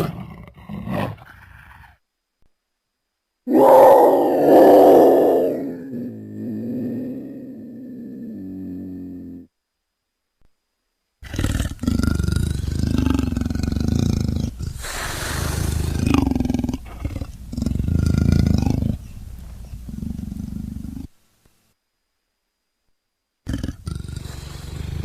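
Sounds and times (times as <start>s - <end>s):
leopard growling: 3.5s - 9.5s, 11.2s - 21.1s, 23.4s - 25.0s.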